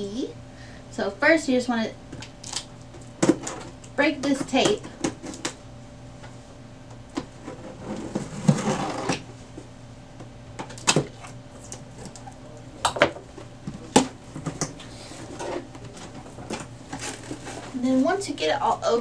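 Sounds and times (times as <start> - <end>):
packing tape breaking: 2.2 - 3.8
cardboard flaps scraping and rustling: 7.3 - 9.3, 14.3 - 17.8.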